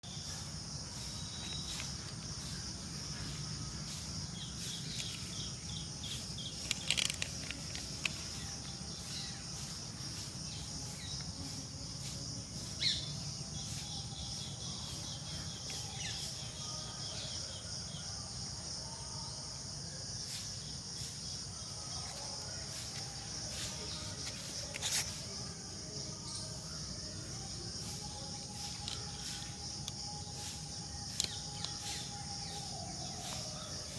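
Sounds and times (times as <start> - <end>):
faint bird chirps: 0.0 - 11.6
insects chirring: 0.0 - 33.9.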